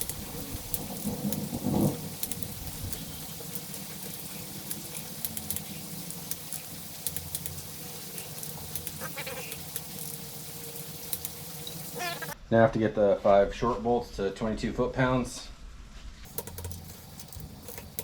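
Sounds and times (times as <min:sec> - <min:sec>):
heavy rain hissing: 0:00.0 - 0:12.4, 0:16.3 - 0:18.0
sharp drip ticks: 0:00.0 - 0:12.4, 0:16.3 - 0:18.0.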